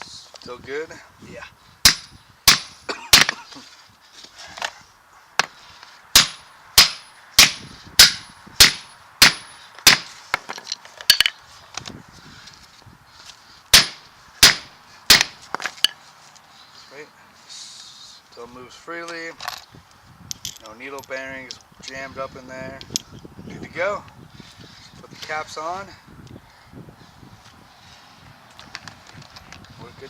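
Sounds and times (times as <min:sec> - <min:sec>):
hammer striking metal: 0:01.8 - 0:03.3, 0:06.2 - 0:10.1, 0:13.8 - 0:15.4.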